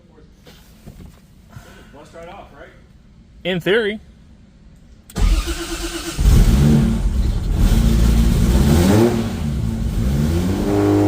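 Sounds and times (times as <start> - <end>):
car engine starting and revving: 5.1 - 11.0.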